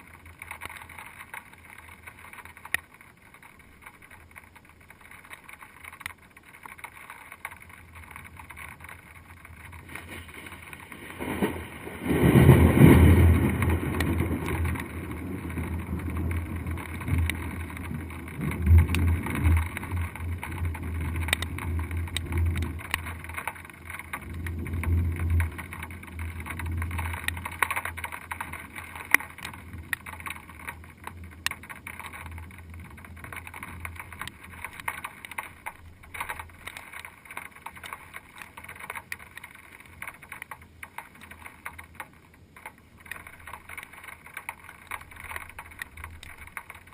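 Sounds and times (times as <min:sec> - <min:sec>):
muffled thunder: 0:09.9 - 0:23.4.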